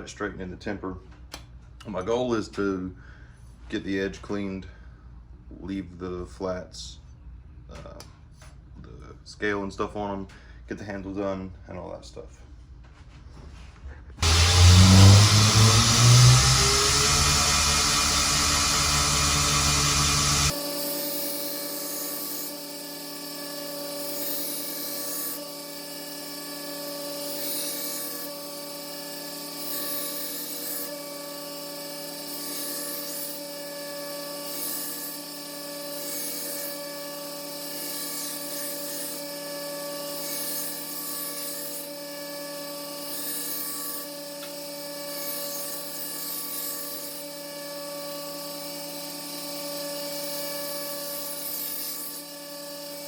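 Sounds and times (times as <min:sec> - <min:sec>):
belt grinder motor hum: 0:14.2 - 0:53.0.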